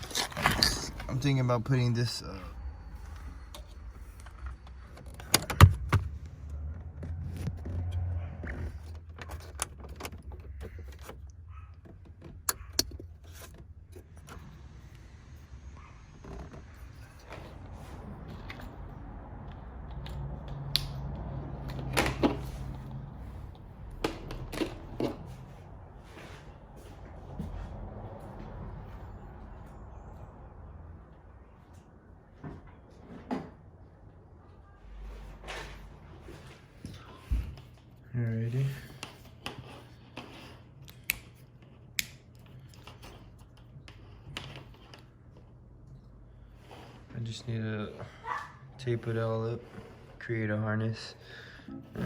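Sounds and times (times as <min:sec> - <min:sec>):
low steady hum: 0:00.0 - 0:32.9
sharp clicks and knocks of handwork: 0:19.5 - 0:22.5, 0:40.8 - 0:45.1.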